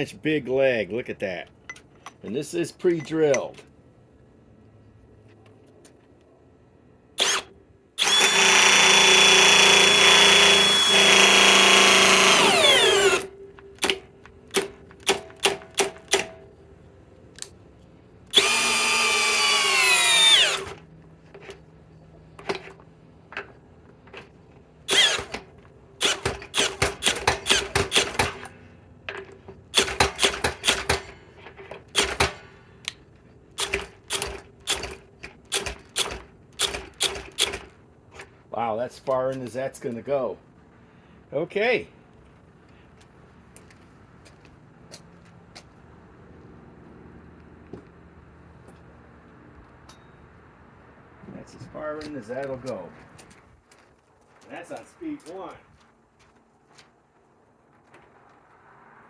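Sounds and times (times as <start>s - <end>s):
cordless drill motor whining: 7.2s - 13.3s, 18.3s - 20.8s, 24.9s - 25.3s
drill clutch clicking: 7.2s - 16.3s, 18.3s - 20.8s, 24.9s - 25.4s, 26.0s - 28.5s, 29.7s - 31.1s, 31.9s - 32.4s, 33.6s - 37.7s.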